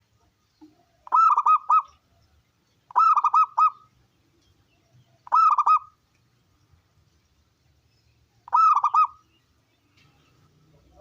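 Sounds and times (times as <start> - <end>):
dove cooing: 0.7 - 2.2, 2.9 - 3.9, 5.1 - 6.0, 8.4 - 9.2.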